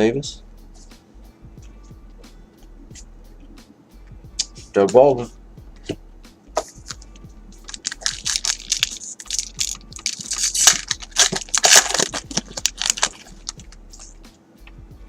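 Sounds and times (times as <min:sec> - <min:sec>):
foil wrapper tearing and crinkling: 0:07.6 - 0:14.1.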